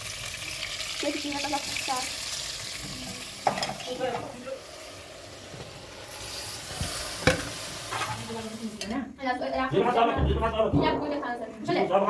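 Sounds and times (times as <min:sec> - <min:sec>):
food sizzling in a pan: 0:00.0 - 0:09.0.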